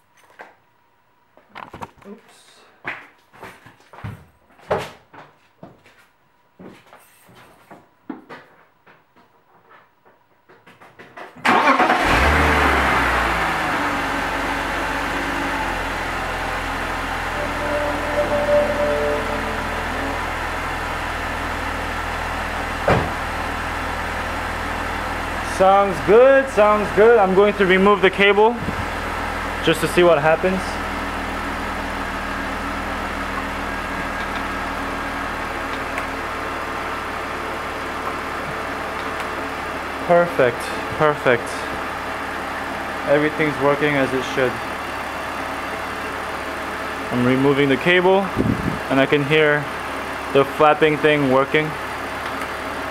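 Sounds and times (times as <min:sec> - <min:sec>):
car engine starting and idling: 0:11.4 - 0:25.9.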